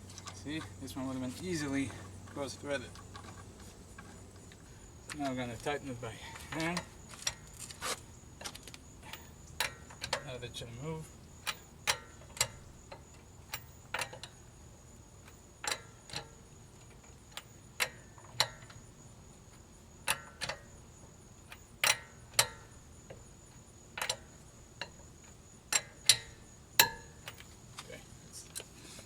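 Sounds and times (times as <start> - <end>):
wrench clicking on lug nuts: 5.1 - 10.6, 11.2 - 27.5.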